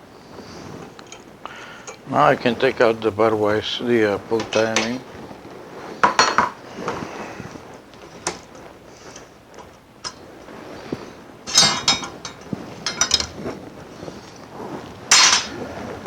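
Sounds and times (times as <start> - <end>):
glass tubing clinking and rattling: 6.0 - 6.6, 11.4 - 13.6, 15.1 - 15.6.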